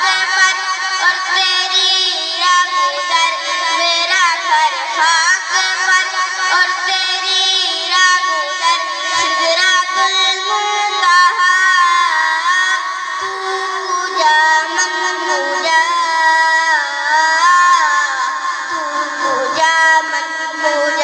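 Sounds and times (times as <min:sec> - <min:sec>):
high voice singing ornamented notes: 0:06.5 - 0:21.0.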